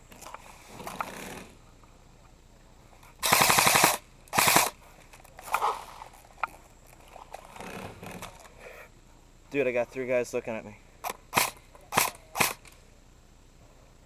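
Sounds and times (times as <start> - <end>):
airsoft rifle full-auto bursts: 3.2 - 4.8, 11.0 - 12.7.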